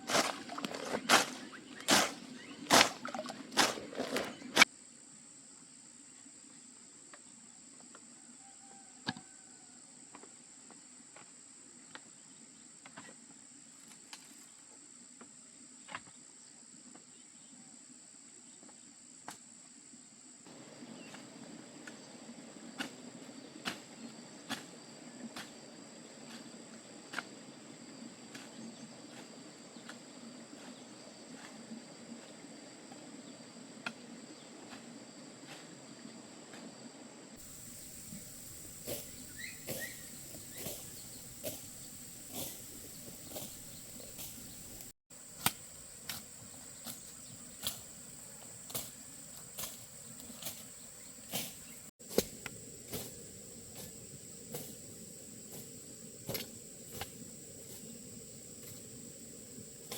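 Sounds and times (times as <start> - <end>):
insects chirring: 0.0 - 4.7, 20.4 - 59.9
rustling noise: 37.4 - 45.4.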